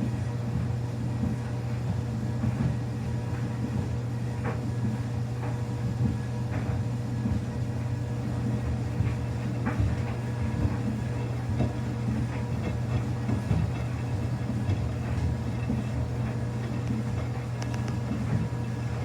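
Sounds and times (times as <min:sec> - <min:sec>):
washing machine motor hum: 0:00.0 - 0:19.0.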